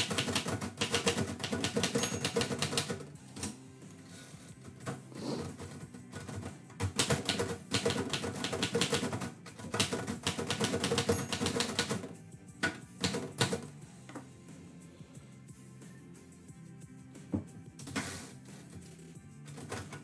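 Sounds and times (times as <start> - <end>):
typewriter key strikes: 0.0 - 3.6, 6.2 - 12.0.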